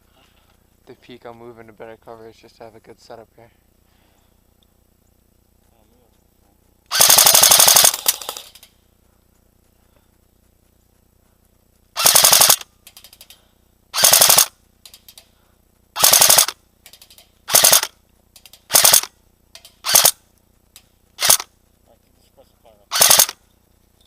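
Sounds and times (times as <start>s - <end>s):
airsoft gun bursts: 6.9s - 8.7s, 11.9s - 15.3s, 16.0s - 20.2s, 21.2s - 21.5s, 22.9s - 23.4s
faint short rattles: 16.8s - 20.0s.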